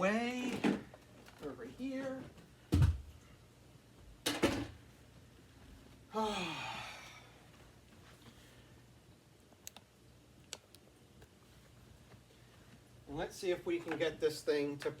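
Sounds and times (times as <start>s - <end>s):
man sighing: 6.1s - 7.4s
faint sharp clicks: 9.6s - 11.3s.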